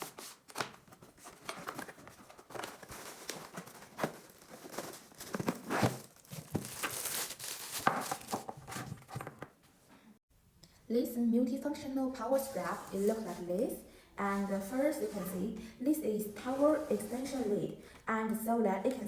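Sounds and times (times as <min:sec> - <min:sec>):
packaging rustling and crinkling: 0:00.0 - 0:09.4
packaging tearing: 0:01.4 - 0:08.7.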